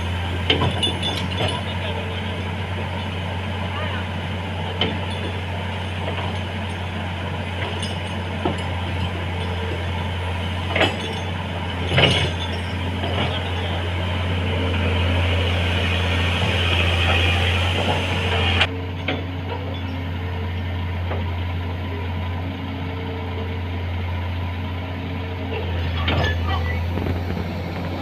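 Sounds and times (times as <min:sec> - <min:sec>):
sharp metallic knocks and clinks: 0:00.0 - 0:03.1, 0:04.7 - 0:14.2, 0:18.9 - 0:20.0, 0:25.5 - 0:26.6
excavator diesel engine droning: 0:00.0 - 0:28.0.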